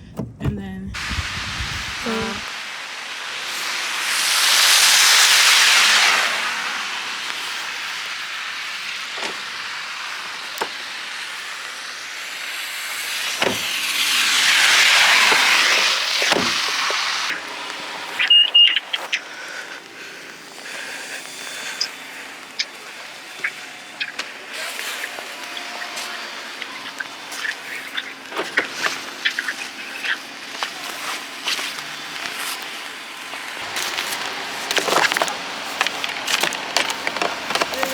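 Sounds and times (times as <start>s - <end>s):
car tyres hissing on wet street: 1.0s - 37.9s.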